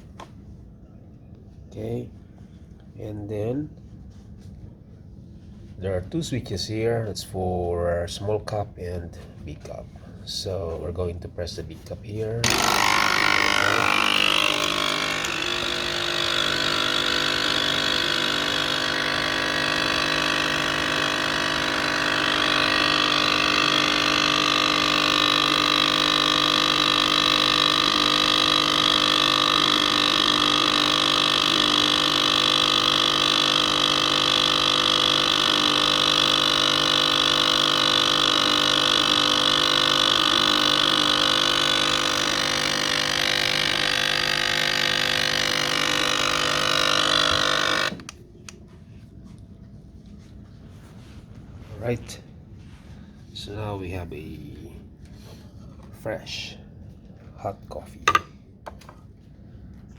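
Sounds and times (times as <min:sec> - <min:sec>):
coffee machine pump humming: 0:12.4 - 0:53.5.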